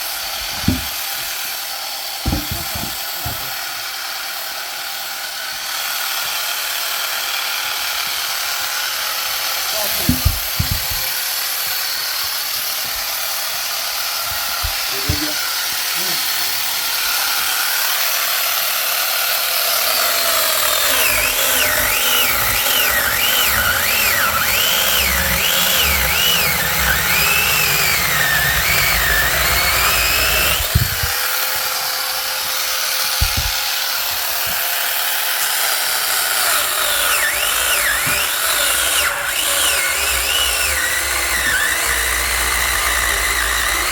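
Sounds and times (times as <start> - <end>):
chainsaw cutting wood: 0.0 - 43.9
short knocks: 29.8 - 31.2, 33.2 - 33.7.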